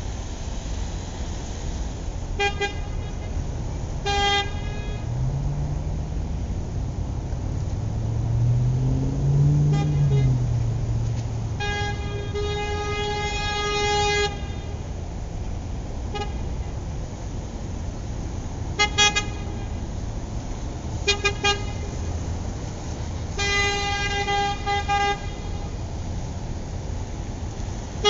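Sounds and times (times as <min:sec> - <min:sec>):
car horn honking: 0:02.4 - 0:03.4, 0:04.0 - 0:05.3, 0:09.5 - 0:10.8, 0:11.4 - 0:14.9, 0:16.1 - 0:16.7, 0:18.8 - 0:19.8, 0:21.0 - 0:22.0, 0:23.3 - 0:25.8.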